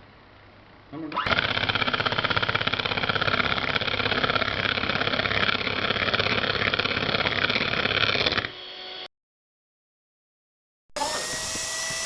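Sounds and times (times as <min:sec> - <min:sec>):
electric mixer beating eggs: 0:01.2 - 0:09.1, 0:11.0 - 0:12.0.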